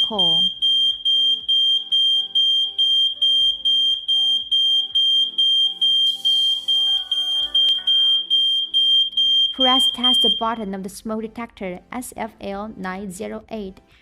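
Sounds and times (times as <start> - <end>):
smoke alarm beeping: 0.0 - 10.6.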